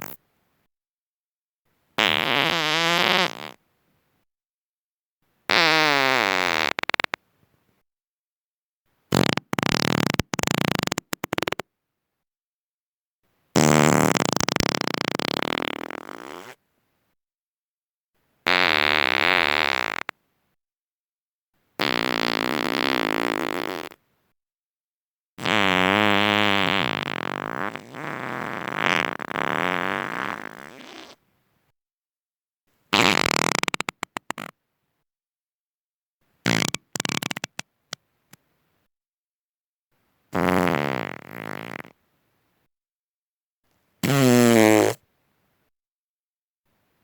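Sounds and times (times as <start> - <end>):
person farting: 0.0 - 0.2, 2.0 - 3.6, 5.5 - 7.2, 9.1 - 11.6, 13.6 - 16.6, 18.5 - 20.2, 21.8 - 24.0, 25.4 - 31.2, 32.9 - 34.6, 36.4 - 37.6, 40.4 - 42.0, 44.0 - 45.0.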